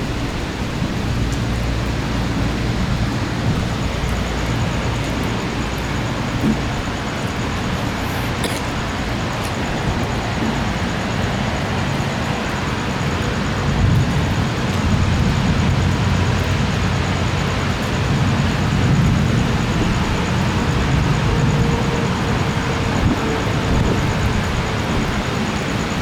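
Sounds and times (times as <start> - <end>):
gusty wind: 0.0 - 26.0
heavy rain: 0.0 - 26.0.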